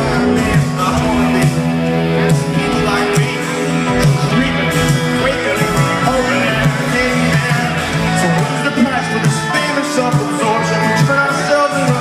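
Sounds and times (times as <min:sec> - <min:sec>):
drums striking steady beat: 0:00.0 - 0:12.0
rock band playing loudly: 0:00.0 - 0:12.0.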